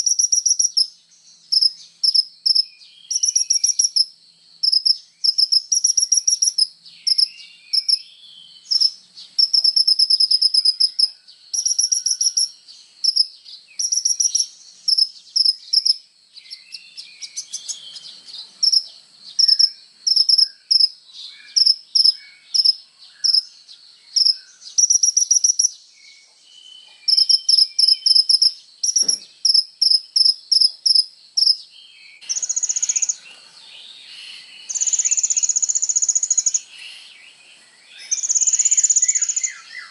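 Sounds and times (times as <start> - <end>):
bird high-pitched chirping trills: 0.0 - 39.9.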